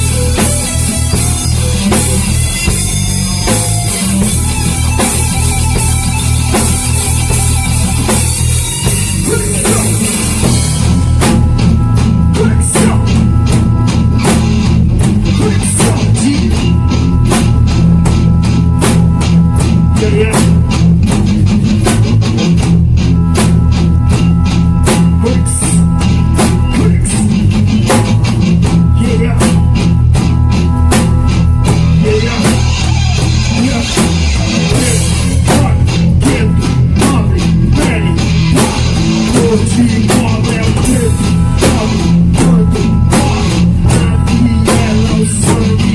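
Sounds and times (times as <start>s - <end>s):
bass guitar: 0.0s - 45.9s
drum kit beat: 0.0s - 45.9s
electric guitar: 0.0s - 45.9s.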